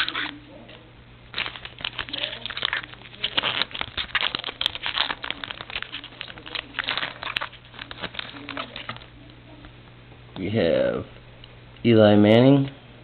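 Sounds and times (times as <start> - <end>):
wrapper crinkling as torn open: 1.3 - 9.1.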